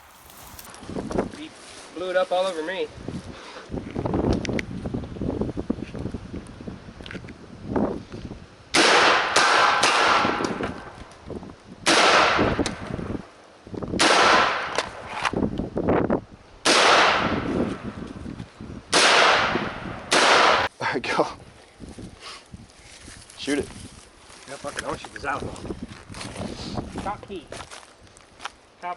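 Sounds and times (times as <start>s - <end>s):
gunshots with echo: 8.8s - 10.5s, 16.6s - 17.5s, 18.9s - 20.7s.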